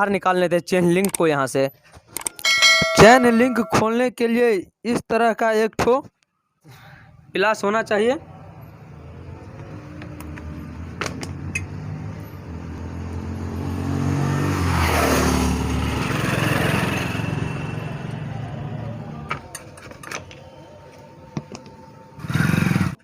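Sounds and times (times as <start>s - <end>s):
motor vehicle passing: 8.2s - 23.0s.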